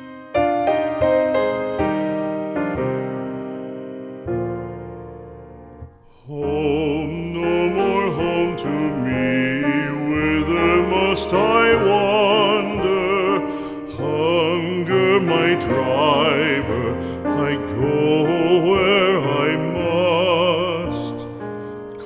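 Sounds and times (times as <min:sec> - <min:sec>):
piano notes: 0:00.0 - 0:22.0
person singing with wide vibrato: 0:06.1 - 0:22.0.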